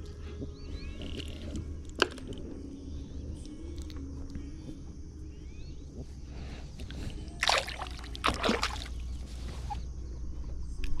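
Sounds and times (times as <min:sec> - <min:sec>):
steady low rumble: 0:00.0 - 0:11.0
water splashing: 0:07.3 - 0:09.1.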